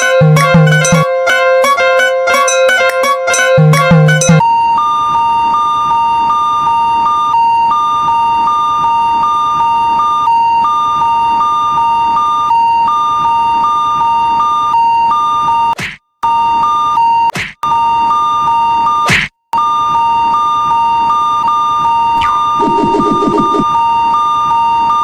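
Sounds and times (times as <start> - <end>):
railroad crossing warning bell ringing: 0.6 - 1.1, 2.4 - 4.4.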